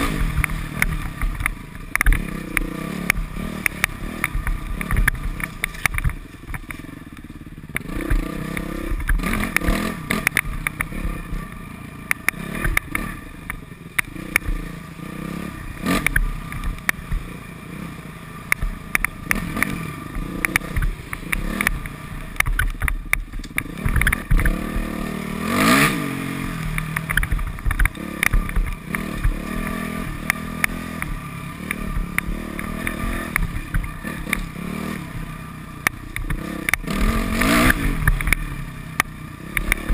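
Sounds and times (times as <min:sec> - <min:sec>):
dirt bike engine revving: 0:00.0 - 0:39.9.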